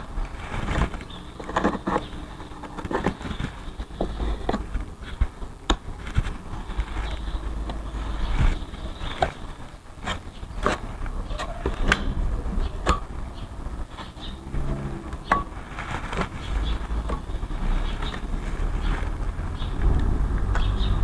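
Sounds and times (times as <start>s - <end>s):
applicator scraping a panel: 0.5s - 13.0s
low rumble: 11.1s - 21.0s.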